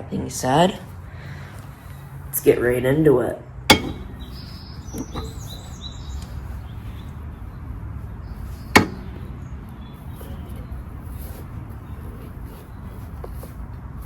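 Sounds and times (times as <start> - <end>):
sharp knock: 3.7 - 5.4, 8.8 - 9.3.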